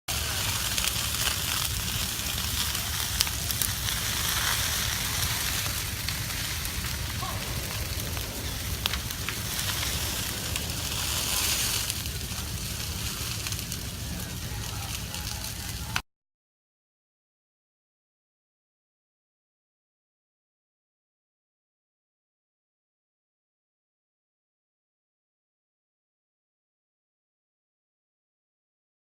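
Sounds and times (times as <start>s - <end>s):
fire crackling hiss: 0.1s - 16.0s
low rumble: 0.1s - 16.0s.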